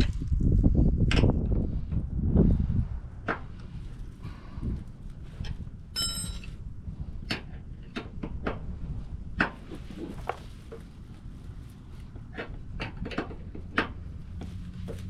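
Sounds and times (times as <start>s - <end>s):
steady low rumble: 0.0s - 15.0s
metallic ring: 5.9s - 6.6s.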